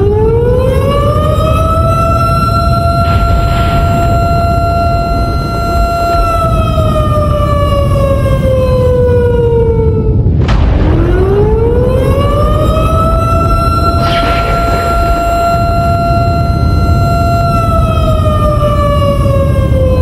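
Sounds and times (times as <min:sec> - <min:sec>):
heavy low rumble: 0:00.0 - 0:20.0
siren tone: 0:00.0 - 0:20.0
sharp crack: 0:13.8 - 0:16.0.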